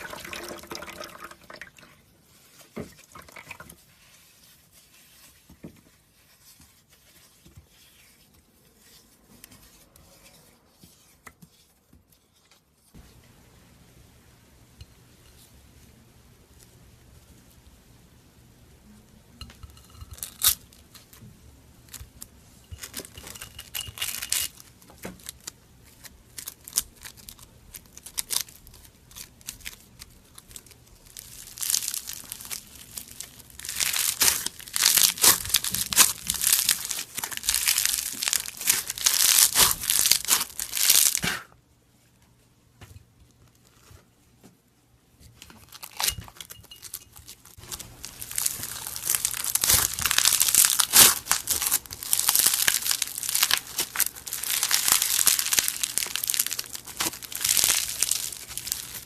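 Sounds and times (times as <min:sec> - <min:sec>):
brittle material crackling: 0:21.8 - 0:41.5, 0:45.4 - 0:59.0.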